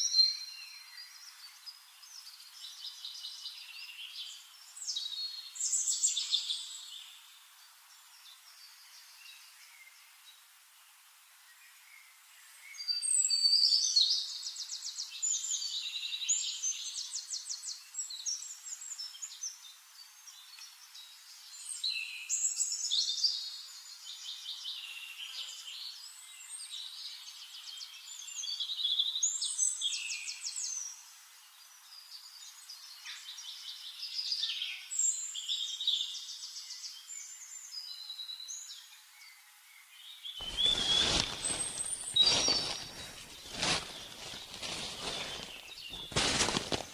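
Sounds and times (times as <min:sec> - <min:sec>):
faint steady hiss: 0:00.0 - 0:46.9
songbirds trilling and chirping: 0:12.7 - 0:46.9.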